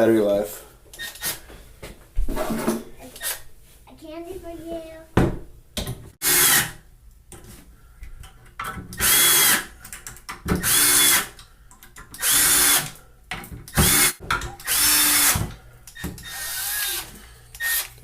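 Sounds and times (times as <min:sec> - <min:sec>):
screwdriver motor whirring: 0:06.2 - 0:06.7, 0:09.0 - 0:09.7, 0:10.6 - 0:11.3, 0:12.2 - 0:12.9, 0:13.7 - 0:18.0.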